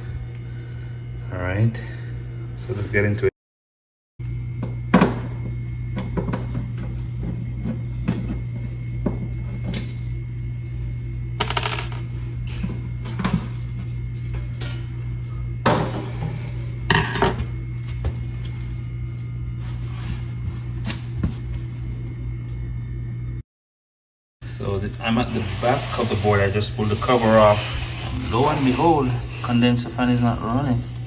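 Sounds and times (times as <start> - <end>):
refrigerator humming: 0.0 - 3.3, 4.2 - 23.4, 24.4 - 31.0
scraping and rustling: 17.8 - 22.0.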